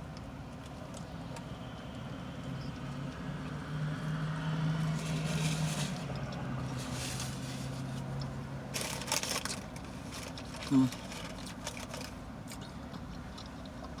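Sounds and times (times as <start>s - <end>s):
vehicle engine humming: 0.0s - 14.0s.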